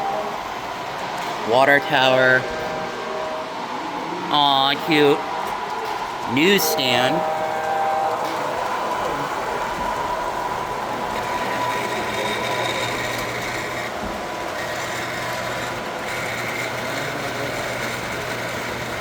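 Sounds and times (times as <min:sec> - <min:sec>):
model train motors whirring: 0:05.1 - 0:19.0.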